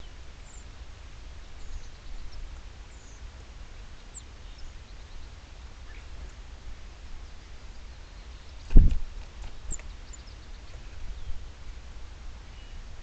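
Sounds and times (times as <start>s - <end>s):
faint high bird chirps: 1.4s - 6.2s, 7.2s - 11.4s, 12.4s - 12.9s.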